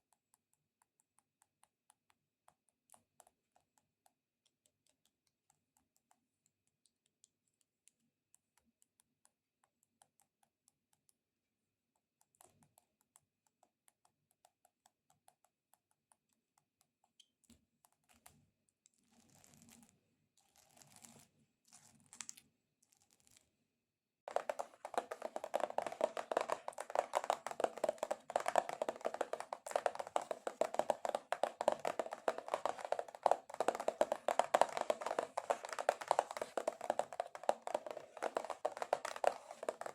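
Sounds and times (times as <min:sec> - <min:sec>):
fingernails tapping on cardboard: 0:24.3 - 0:39.9.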